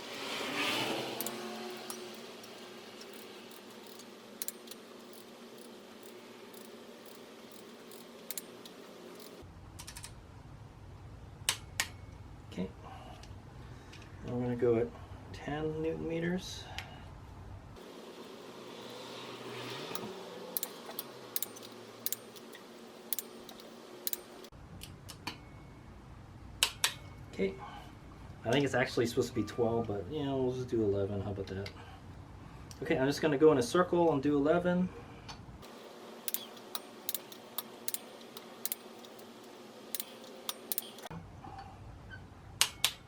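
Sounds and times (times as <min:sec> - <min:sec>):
torque wrench clicking: 0:00.0 - 0:09.4, 0:18.8 - 0:24.5, 0:36.2 - 0:41.1.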